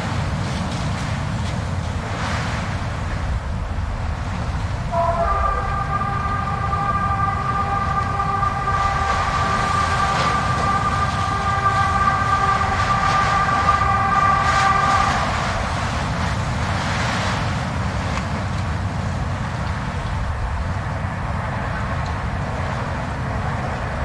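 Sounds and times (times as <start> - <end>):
blizzard wind rushing: 2.0 - 24.0
howling tone: 4.8 - 17.1.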